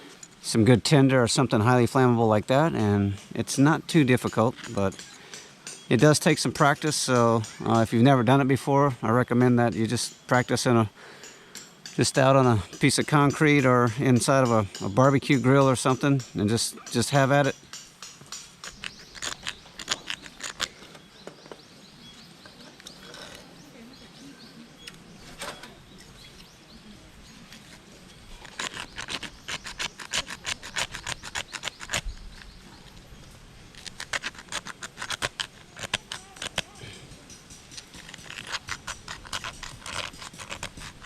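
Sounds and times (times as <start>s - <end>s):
knife scraping fire-starter block: 13.5s - 20.9s, 27.5s - 32.6s, 33.7s - 41.0s.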